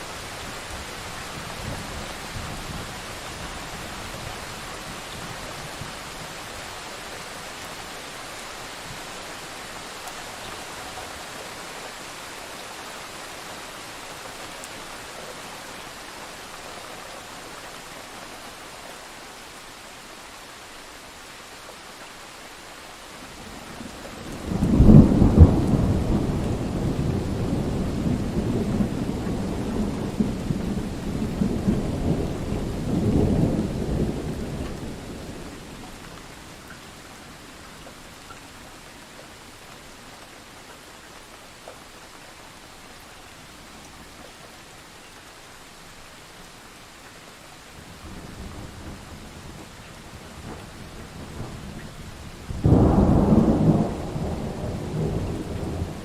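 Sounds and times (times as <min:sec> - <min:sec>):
rain hiss: 0:00.0 - 0:56.0
thunder clap and rolling rumble: 0:23.9 - 0:35.7, 0:48.0 - 0:56.0.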